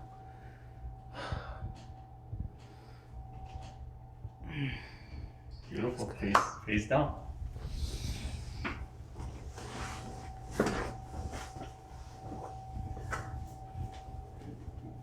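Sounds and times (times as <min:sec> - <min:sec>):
rustling: 0:07.6 - 0:15.0.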